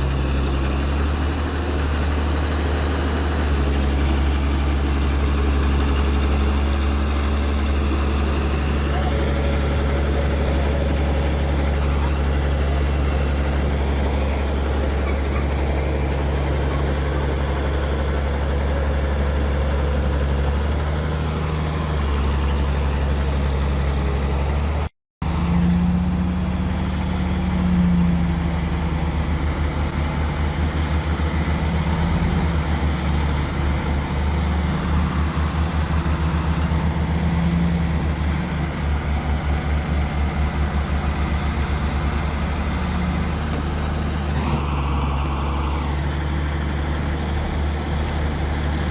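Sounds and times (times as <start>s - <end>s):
heavy truck engine running: 0.0s - 48.9s.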